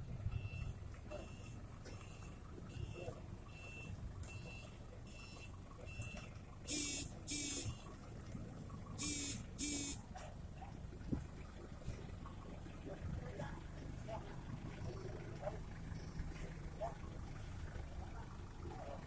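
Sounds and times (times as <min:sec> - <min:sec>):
buzzing beeps: 0:00.3 - 0:07.8, 0:09.0 - 0:10.0
short high beeps: 0:00.3 - 0:07.8, 0:09.0 - 0:10.0.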